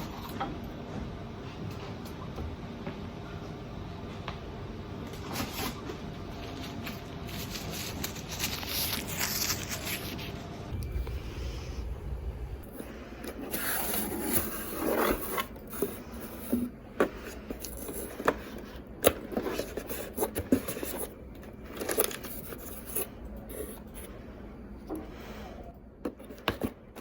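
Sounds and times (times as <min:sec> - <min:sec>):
low steady hum: 0:05.8 - 0:26.1.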